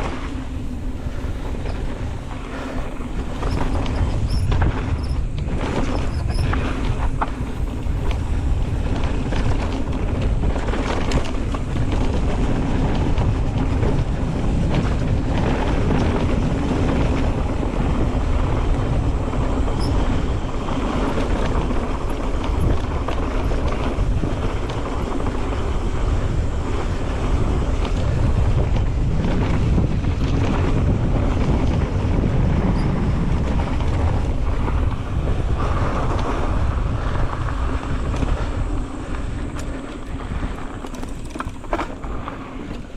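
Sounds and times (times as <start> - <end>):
bike rattling over bumps: 0.0 - 42.9
bike tyres rumbling on dirt: 0.0 - 42.9
wind buffeting microphone: 0.0 - 42.9.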